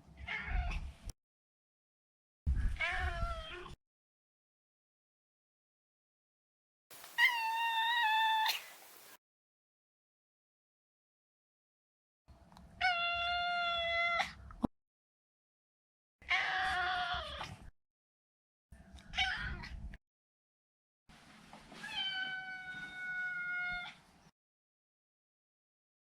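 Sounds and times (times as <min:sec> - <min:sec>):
cat meowing: 0:07.2 - 0:08.7, 0:21.8 - 0:24.0.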